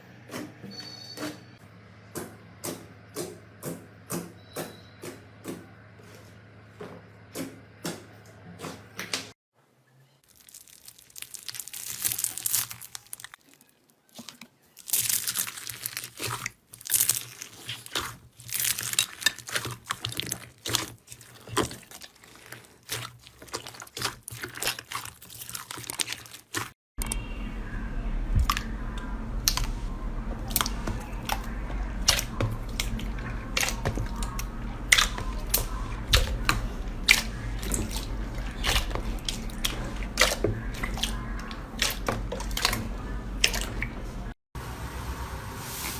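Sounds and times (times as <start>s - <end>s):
slime squeezed by hand crackling: 10.3s - 26.7s
steady low hum: 27.0s - 45.6s.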